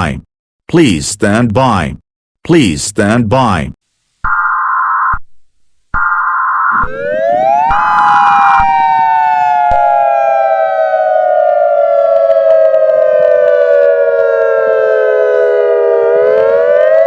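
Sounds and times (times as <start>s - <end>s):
siren wailing: 4.3s - 5.2s, 6.0s - 17.0s
steady siren tone: 4.3s - 5.2s, 6.0s - 17.0s.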